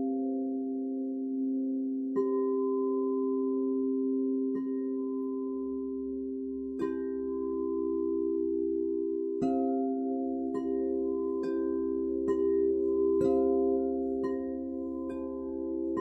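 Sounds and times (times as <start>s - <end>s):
singing bowls ringing: 6.8s - 16.0s.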